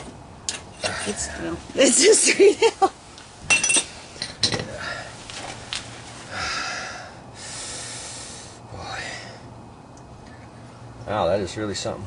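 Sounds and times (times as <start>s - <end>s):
person breathing with a hiss: 6.2s - 9.5s.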